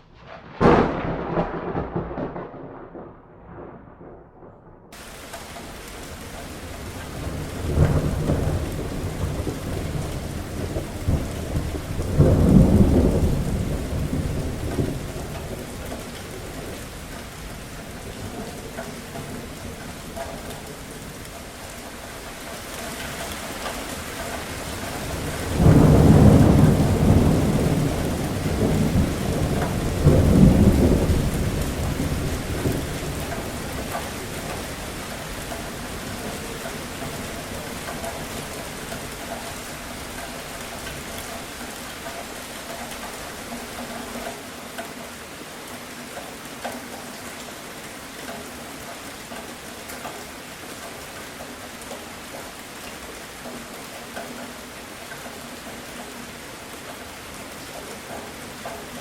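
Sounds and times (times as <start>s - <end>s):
thunder rumbling: 0.0s - 43.8s
steady rain falling: 0.0s - 59.0s.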